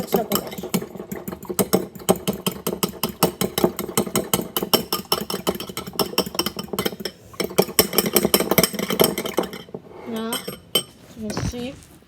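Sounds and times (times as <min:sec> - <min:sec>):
fork beating eggs in bowl: 0:10.2 - 0:12.0.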